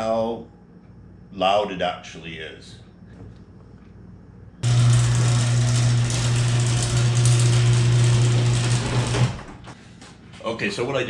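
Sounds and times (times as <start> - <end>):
garage door motor hum: 4.6 - 9.9.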